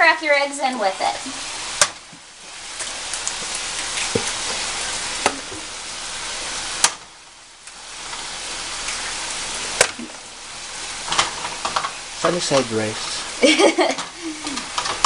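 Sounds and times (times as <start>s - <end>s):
rice and eggs sizzling in a pan: 0.0s - 15.0s.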